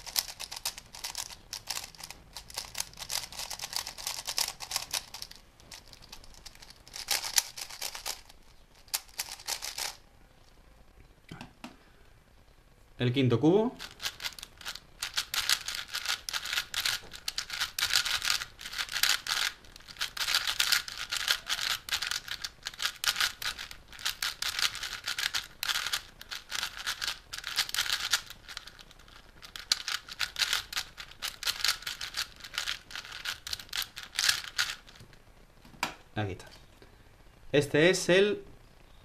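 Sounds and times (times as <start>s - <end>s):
speed cube clicking: 0.0s - 10.0s, 13.8s - 35.0s.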